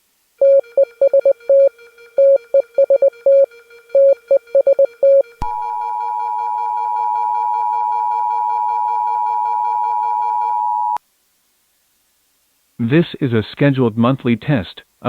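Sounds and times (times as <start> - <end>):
two-tone alert signal: 0.4 - 11.0.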